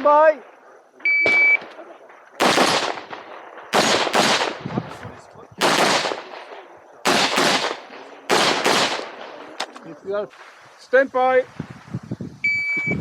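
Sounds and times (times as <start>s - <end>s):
rifle shots echoing: 1.2s - 9.7s.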